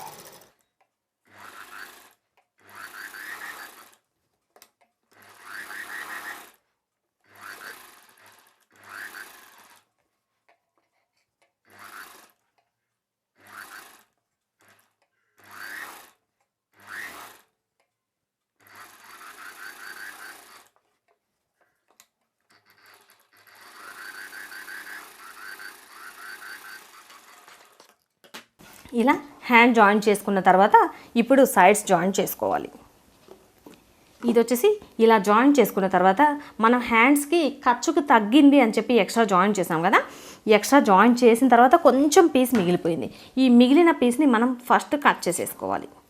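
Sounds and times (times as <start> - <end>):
sewing machine motor whine: 0.0 - 4.1, 5.1 - 10.0, 11.6 - 12.4, 13.3 - 17.6, 18.6 - 21.0, 22.4 - 28.0.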